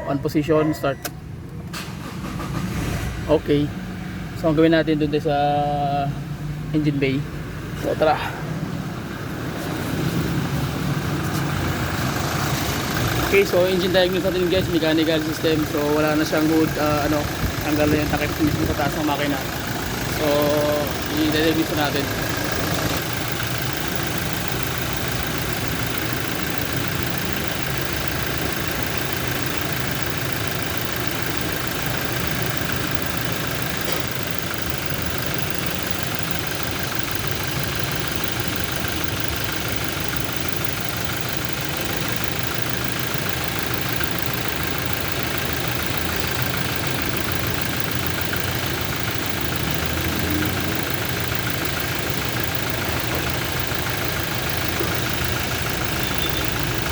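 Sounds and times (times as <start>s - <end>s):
diesel engine idling: 0.0s - 56.9s
person talking: 13.2s - 23.0s.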